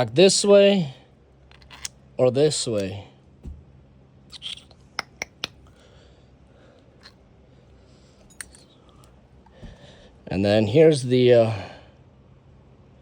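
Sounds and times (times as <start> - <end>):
soft knocks: 3.4 - 3.7
clicks and taps of fan parts: 5.0 - 5.6.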